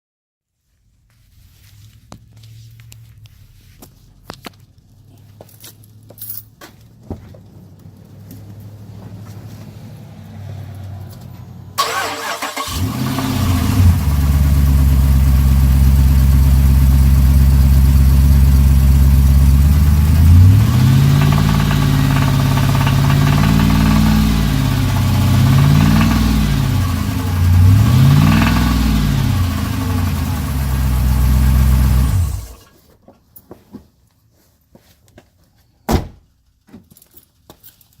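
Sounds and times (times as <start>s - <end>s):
car engine starting and revving: 9.8s - 32.7s
engine knock: 14.2s - 24.4s.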